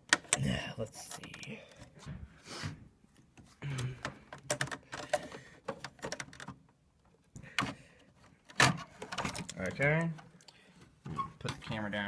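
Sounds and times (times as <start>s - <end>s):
hard drive handling clicks and rattles: 3.3s - 11.8s.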